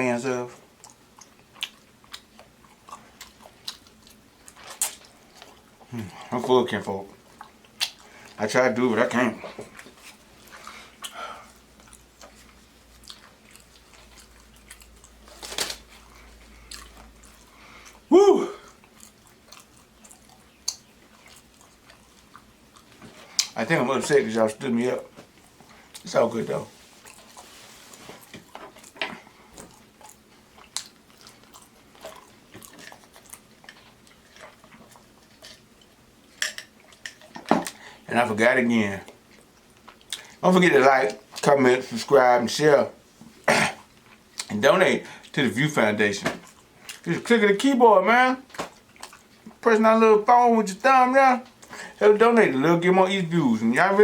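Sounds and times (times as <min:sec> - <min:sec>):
person chewing food: 0:00.6 - 0:08.4, 0:09.4 - 0:23.6, 0:25.1 - 0:26.1, 0:26.7 - 0:38.0, 0:39.1 - 0:40.4, 0:43.1 - 0:44.5, 0:46.4 - 0:47.1, 0:48.5 - 0:49.6
mouth clicks of person chewing: 0:00.8 - 0:05.6, 0:18.6 - 0:23.6
wet mouth clicks and smacks: 0:07.7 - 0:08.1, 0:18.9 - 0:22.0.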